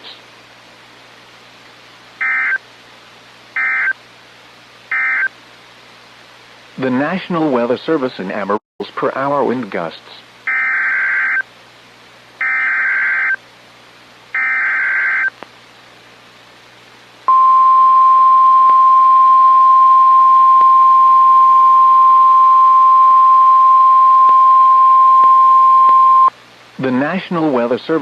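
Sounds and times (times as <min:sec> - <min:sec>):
steady warning alarm tone: 0:03.6 - 0:04.0, 0:04.9 - 0:05.3, 0:10.5 - 0:11.4, 0:12.4 - 0:13.4, 0:14.4 - 0:15.3, 0:17.3 - 0:26.3.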